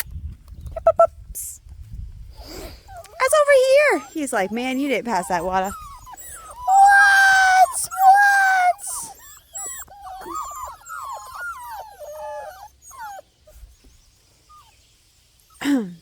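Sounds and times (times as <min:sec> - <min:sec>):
puppies whimpering and yipping: 0:02.4 - 0:14.8
puppies crying: 0:02.7 - 0:13.9.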